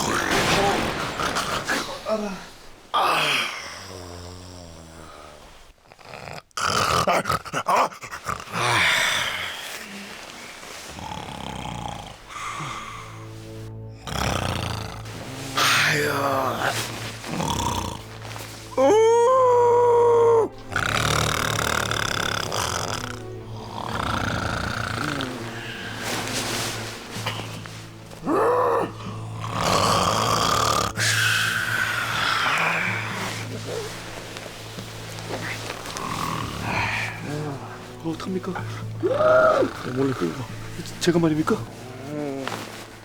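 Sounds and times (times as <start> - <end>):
rattling snorts: 0.0 - 2.9, 3.5 - 13.1, 14.0 - 16.0, 16.6 - 18.6, 20.6 - 28.0, 28.9 - 37.9
man snoring loudly: 10.9 - 13.1, 14.0 - 18.1, 20.7 - 26.5, 28.9 - 33.5.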